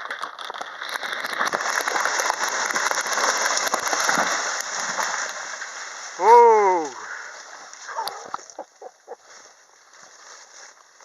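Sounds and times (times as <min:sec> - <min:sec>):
tree crashing through branches: 0:00.0 - 0:08.6.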